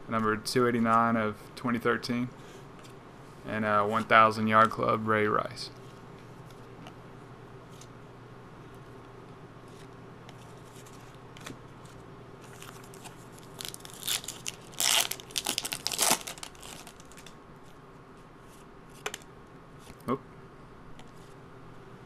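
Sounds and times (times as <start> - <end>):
plastic wrapper tearing and crinkling: 12.5 - 17.4.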